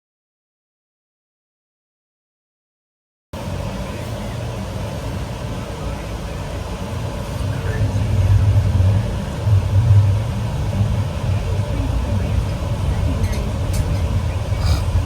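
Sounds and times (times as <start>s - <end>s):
vehicle engine idling: 3.4s - 15.0s.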